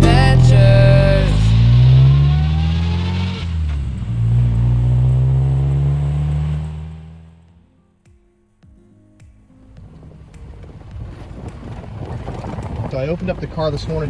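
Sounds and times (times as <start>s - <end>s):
car engine accelerating: 0.0s - 7.5s.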